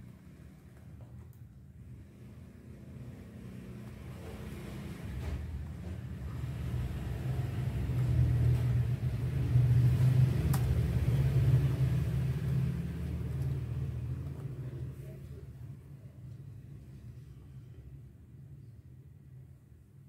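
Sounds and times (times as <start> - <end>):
passing vehicle engine rumble: 1.8 - 15.8.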